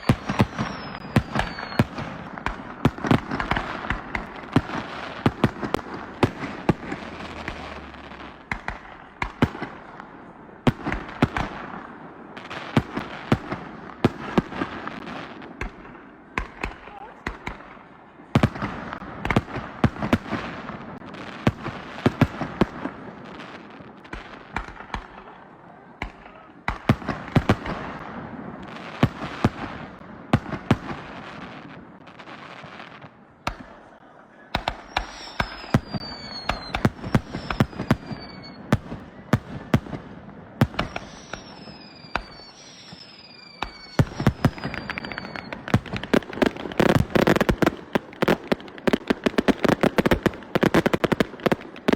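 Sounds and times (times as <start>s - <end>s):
falling firework whistles: 0.0s - 5.3s, 34.5s - 39.9s, 40.6s - 48.3s
fireworks crackle: 0.0s - 25.4s, 26.0s - 51.9s
firework shells bursting: 34.6s - 38.6s, 40.6s - 51.9s.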